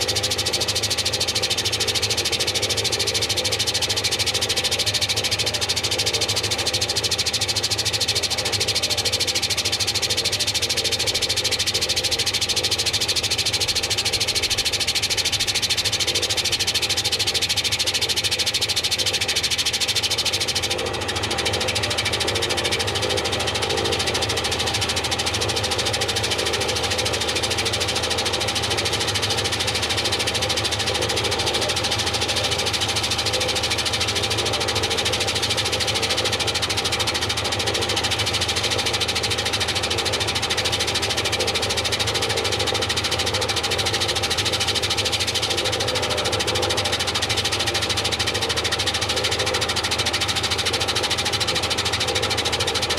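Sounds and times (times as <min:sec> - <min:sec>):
washing machine whirring: 0:00.0 - 0:52.9.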